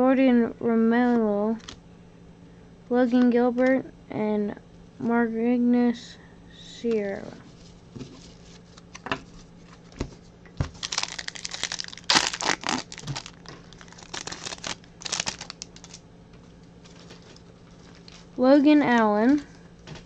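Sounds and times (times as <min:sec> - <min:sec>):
foil wrapper crinkling and tearing: 0:10.6 - 0:16.0, 0:16.8 - 0:19.4.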